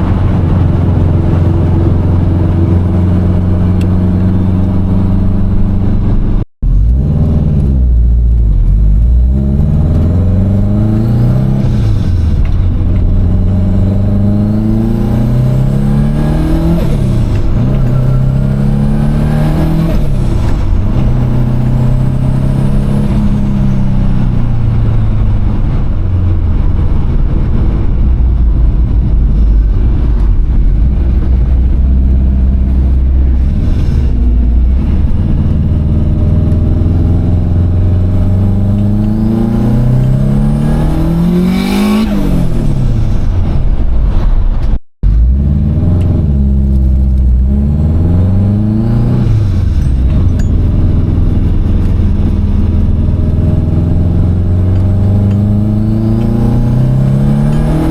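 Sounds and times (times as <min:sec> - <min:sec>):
turbocharged car engine revving: 0:00.0 - 0:57.9.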